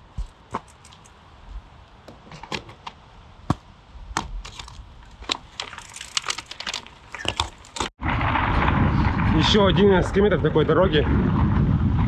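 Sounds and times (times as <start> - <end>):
sharp clicks and crackles: 4.4 - 9.6.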